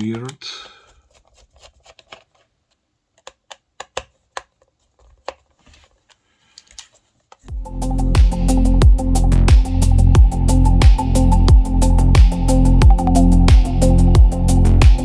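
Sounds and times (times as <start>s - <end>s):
laptop being handled clicks: 3.2s - 7.5s.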